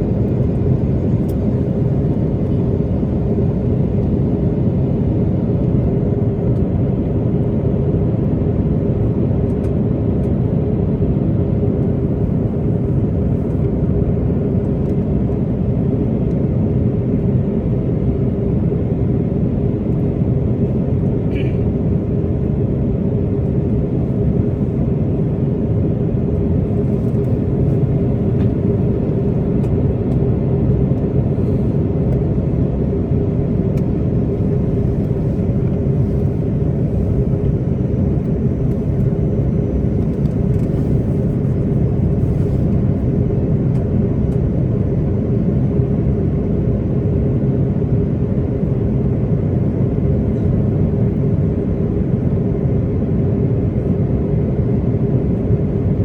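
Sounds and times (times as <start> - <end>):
airliner cabin drone: 0.0 - 56.0
engine and airflow noise: 0.0 - 56.0
steady hum: 17.2 - 56.0.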